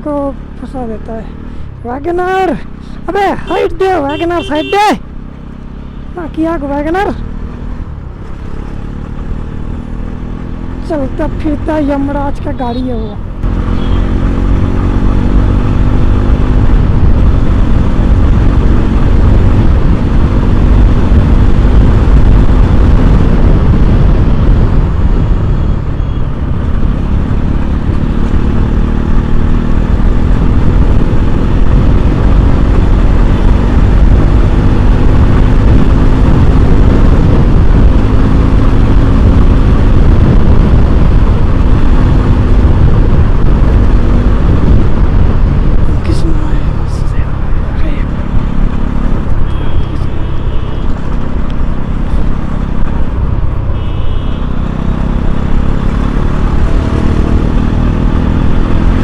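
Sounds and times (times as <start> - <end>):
motorcycle engine running: 0.0 - 59.0
wind rumble on microphone: 13.1 - 59.0.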